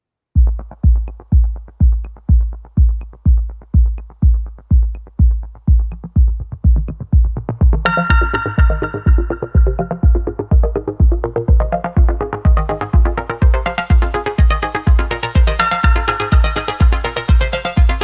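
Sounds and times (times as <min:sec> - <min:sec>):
electronic dance music: 0:00.4 - 0:18.0
heavy kick drum beat: 0:00.4 - 0:18.0
synth chord: 0:07.8 - 0:18.0.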